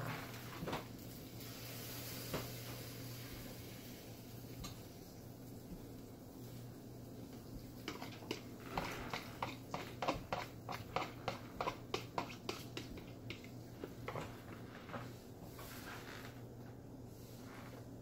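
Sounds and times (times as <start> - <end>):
utensil tapping against bowl: 9.1 - 13.5.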